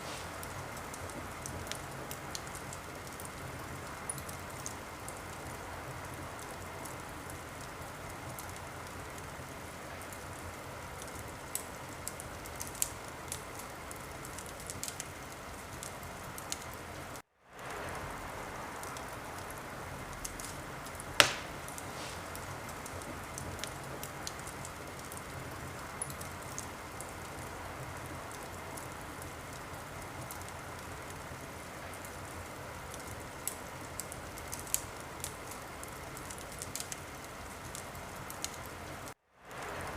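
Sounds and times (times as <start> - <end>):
wood fire crackling: 0.0 - 39.9
loud fire pop: 21.2 - 22.2.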